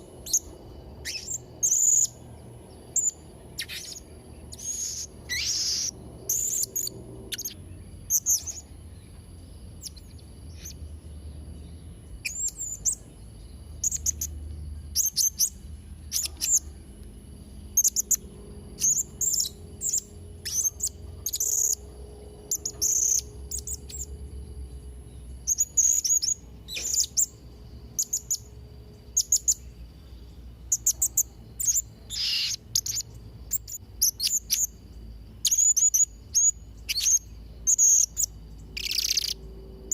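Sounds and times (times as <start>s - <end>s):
faint high whine: 0.0s - 39.9s
parrot chirping and trilling: 0.2s - 2.1s, 3.0s - 8.7s, 12.2s - 13.0s, 15.0s - 16.8s, 17.7s - 21.8s, 25.5s - 27.3s, 30.7s - 34.7s, 35.4s - 39.4s.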